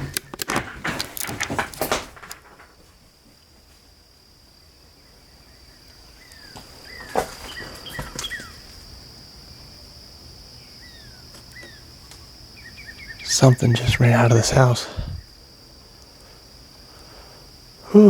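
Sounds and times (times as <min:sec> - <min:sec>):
insects droning: 0:00.0 - 0:18.0
bird chirps: 0:05.5 - 0:08.6, 0:10.6 - 0:11.9, 0:12.6 - 0:14.4.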